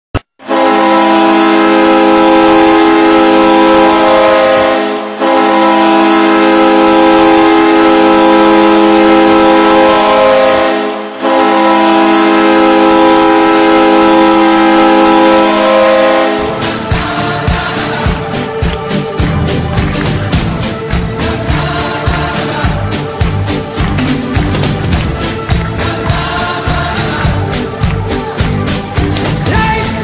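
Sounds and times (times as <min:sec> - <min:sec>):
goal horn blowing: 0:00.4 - 0:18.6.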